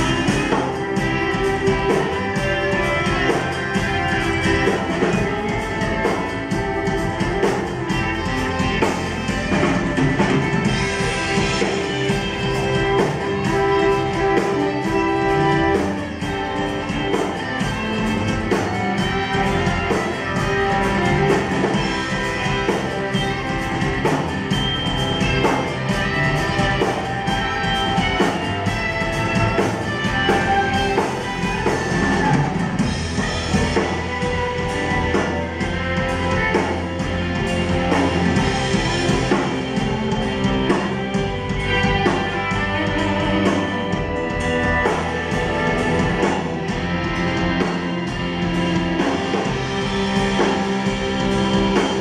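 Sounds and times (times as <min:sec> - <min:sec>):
drum kit beat: 0:00.0 - 0:52.0
guitars playing: 0:00.0 - 0:52.0.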